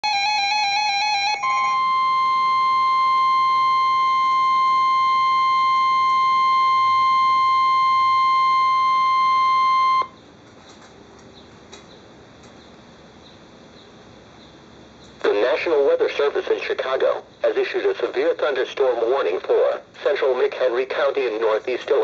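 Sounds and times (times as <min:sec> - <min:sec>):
steady alarm tone: 0:00.0 - 0:10.2
faint radio hiss: 0:15.0 - 0:22.0.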